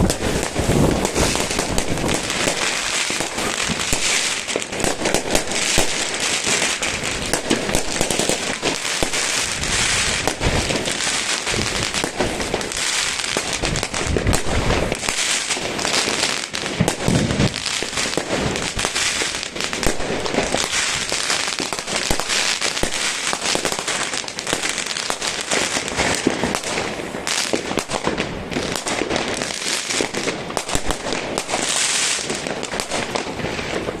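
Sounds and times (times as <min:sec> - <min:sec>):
deep firework booms: 0:00.0 - 0:15.9, 0:16.6 - 0:23.0
firecrackers crackling: 0:00.0 - 0:34.0.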